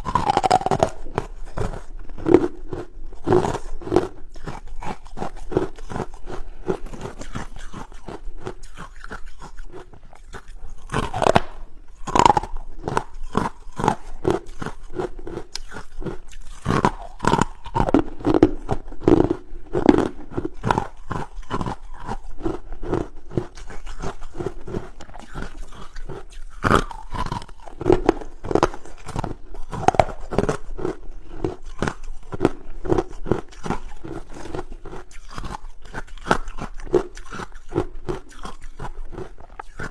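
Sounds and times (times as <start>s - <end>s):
ice being crunched by teeth: 0.0s - 39.9s.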